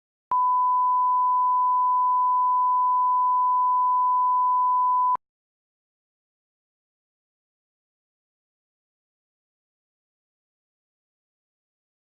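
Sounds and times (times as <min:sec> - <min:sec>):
steady reference tone beep: 0:00.3 - 0:05.2.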